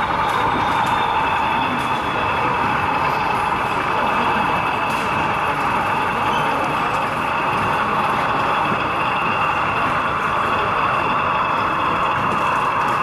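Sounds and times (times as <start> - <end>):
diesel engine sound through small speaker: 0.0 - 13.0.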